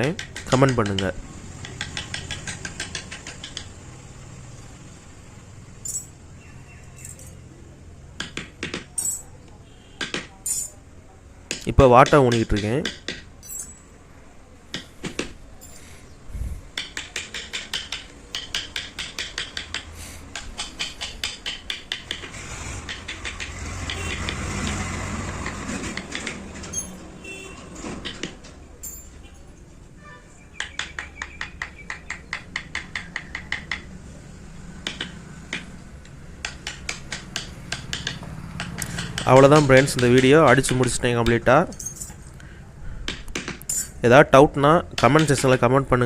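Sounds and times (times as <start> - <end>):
chisel tapping into wood: 0.0 - 3.8, 8.2 - 9.0, 10.0 - 10.4, 11.5 - 13.3, 14.7 - 15.4, 16.7 - 26.4, 28.0 - 28.4, 30.6 - 34.0, 34.8 - 41.4, 43.1 - 43.7, 44.9 - 45.6
rough steady noise: 10.6 - 27.0.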